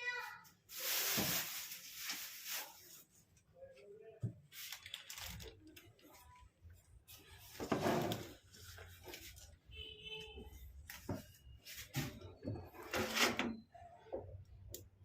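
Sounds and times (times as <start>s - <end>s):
packaging rustling: 0.7s - 3.0s, 4.5s - 6.2s.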